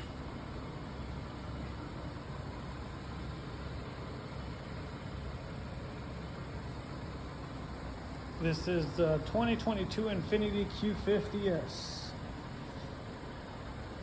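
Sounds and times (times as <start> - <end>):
car engine idling: 0.0 - 14.0.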